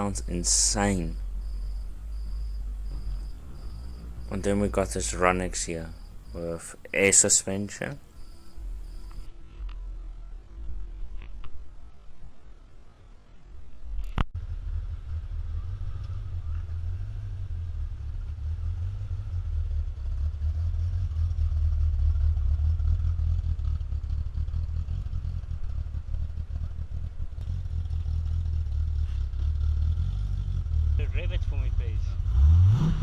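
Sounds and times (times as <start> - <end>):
car engine idling: 0.0 - 9.3.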